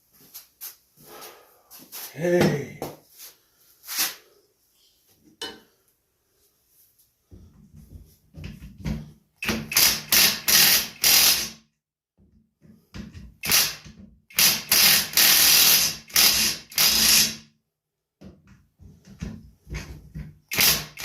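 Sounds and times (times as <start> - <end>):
power tool bursts: 9.5 - 11.6, 13.4 - 17.4, 20.5 - 21.0.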